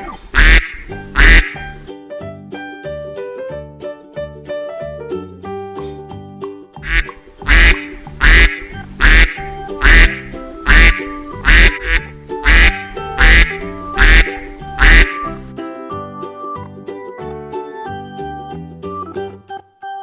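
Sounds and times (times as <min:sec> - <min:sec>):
duck quacking loudly: 0:00.0 - 0:01.8, 0:06.8 - 0:15.4
background music: 0:00.0 - 0:20.0.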